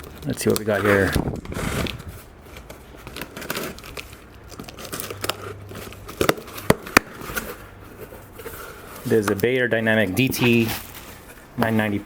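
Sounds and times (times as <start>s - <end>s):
packaging crinkling and tearing: 0.0s - 9.4s.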